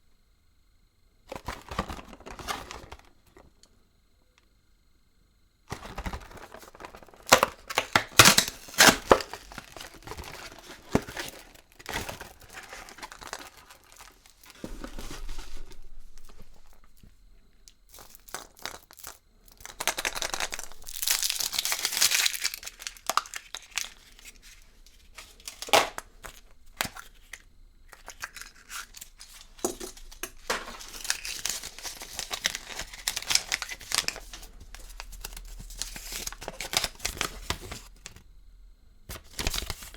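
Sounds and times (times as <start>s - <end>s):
foil wrapper crinkling and tearing: 5.7s - 16.9s, 17.9s - 24.6s, 25.2s - 38.0s.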